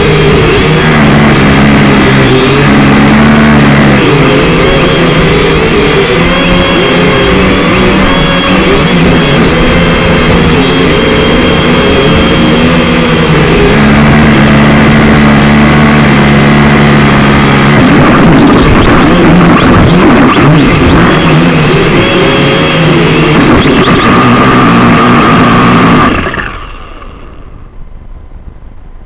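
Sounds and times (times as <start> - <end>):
drone propellers whirring: 0.0 - 28.8.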